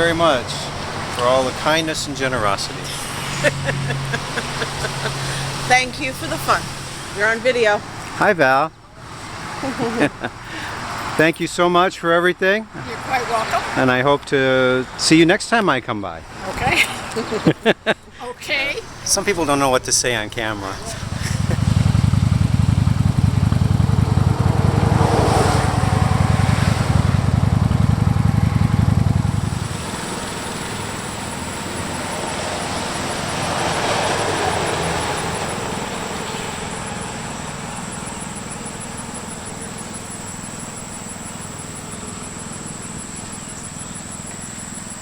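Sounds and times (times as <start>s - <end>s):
motorcycle engine running: 20.4s - 45.0s.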